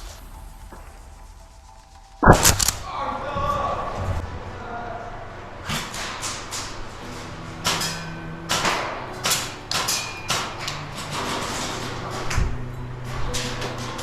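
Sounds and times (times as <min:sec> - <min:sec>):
airsoft gunfire: 0:02.2 - 0:02.8.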